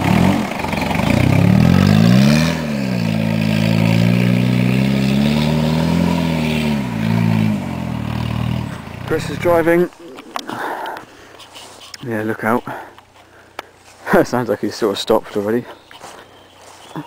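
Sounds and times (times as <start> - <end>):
diesel engine revving: 0.0 - 11.0.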